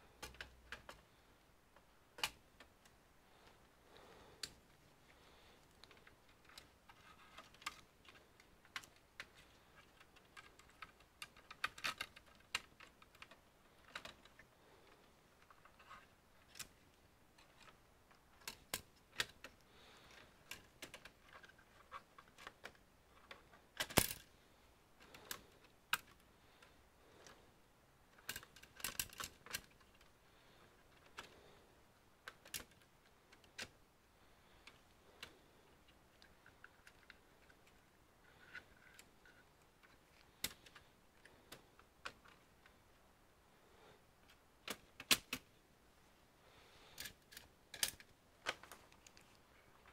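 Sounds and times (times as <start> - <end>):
tools and parts clicking: 0.2 - 1.1, 5.6 - 24.3, 28.1 - 30.1, 32.2 - 33.8, 44.2 - 45.5, 46.9 - 49.9.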